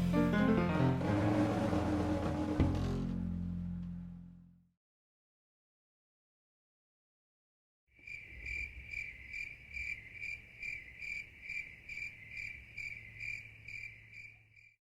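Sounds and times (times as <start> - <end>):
insect chirping trill: 8.0 - 14.8.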